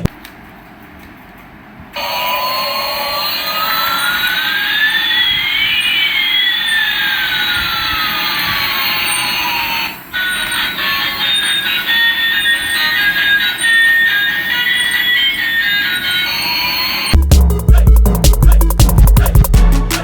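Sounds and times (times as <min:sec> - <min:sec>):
toy jet engine sound effect: 0:02.0 - 0:17.2.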